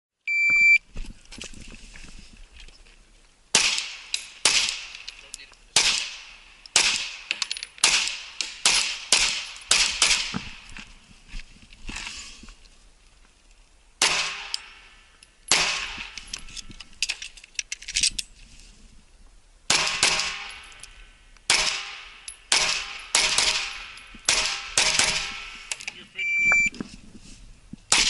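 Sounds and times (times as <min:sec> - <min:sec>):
shot timer beep: 0:00.3 - 0:00.8, 0:26.2 - 0:26.7.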